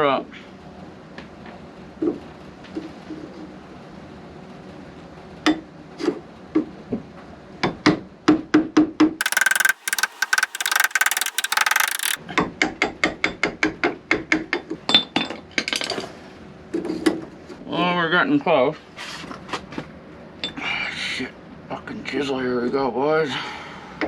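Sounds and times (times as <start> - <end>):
hammer striking chisel: 9.2 - 12.2
high rasping: 9.2 - 12.2.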